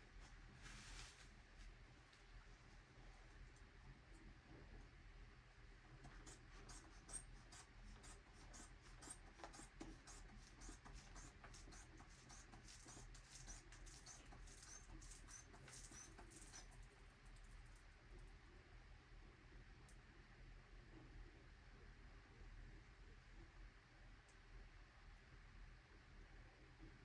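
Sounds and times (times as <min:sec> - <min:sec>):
faint small clicks: 0:19.8 - 0:20.0.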